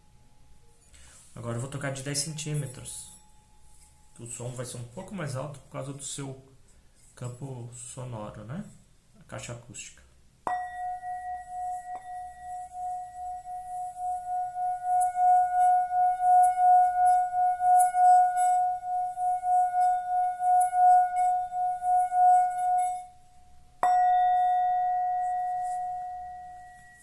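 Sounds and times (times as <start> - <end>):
singing bowl rubbed tone: 0.0 - 5.0, 10.5 - 27.0
singing bowl struck ringing: 10.4 - 27.0
stick scratching bowl: 10.8 - 23.2, 24.6 - 27.0.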